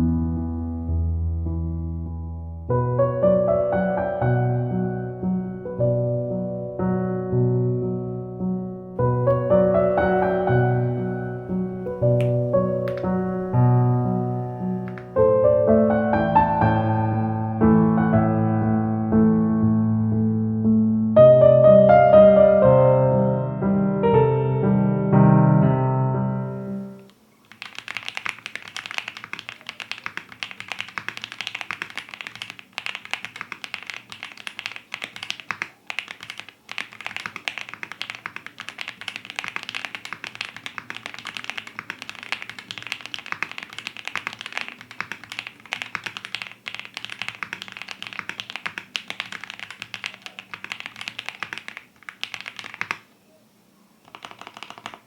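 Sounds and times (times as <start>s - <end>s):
piano music: 0.0s - 27.1s
fast typing on mechanical keyboard: 12.0s - 13.2s, 14.8s - 15.2s, 27.5s - 53.1s, 54.0s - 55.0s.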